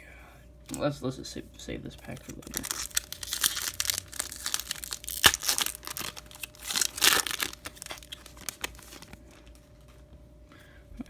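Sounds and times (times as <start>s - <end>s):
wrapper crinkling and tearing: 2.1s - 9.6s
wrapper snapping: 2.1s - 9.6s.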